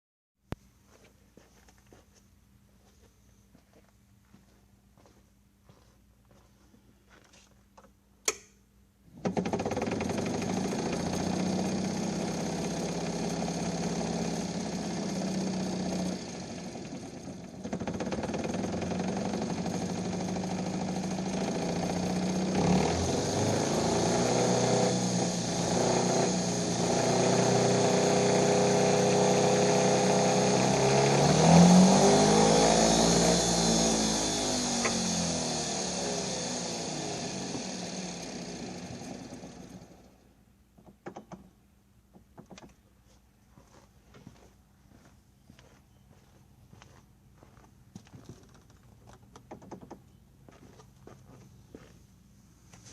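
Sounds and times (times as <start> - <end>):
click: 8.2 - 8.6
golf cart motor running: 9.1 - 40.3.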